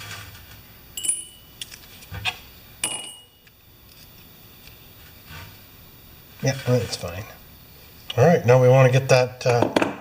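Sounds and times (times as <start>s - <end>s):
light metallic clinks: 1.0s - 1.8s, 2.8s - 3.4s.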